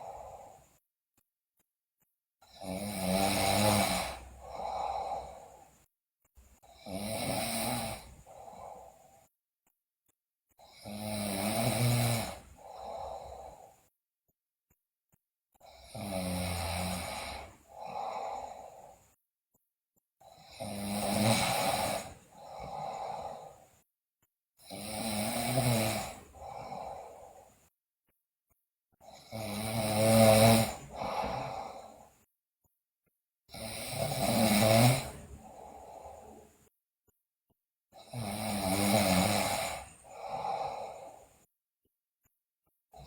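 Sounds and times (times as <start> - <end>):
girl snoring loudly: 2.5 - 5.8, 6.6 - 9.2, 10.6 - 13.7, 15.6 - 19.0, 20.2 - 23.7, 24.6 - 27.5, 29.0 - 32.1, 33.5 - 36.5, 38.0 - 41.3.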